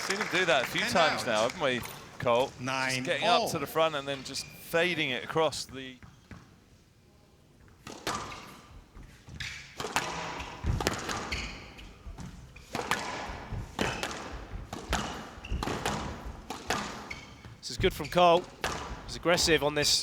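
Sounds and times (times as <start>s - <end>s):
squash ball hits: 9.8s - 17.2s, 18.5s - 19.1s
shoe squeaks: 11.2s - 12.8s, 15.4s - 15.9s, 16.8s - 18.6s.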